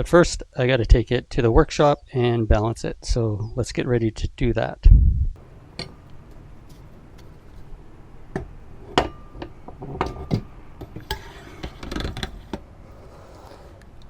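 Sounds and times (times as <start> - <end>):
parts clicking and knocking: 5.4 - 12.7.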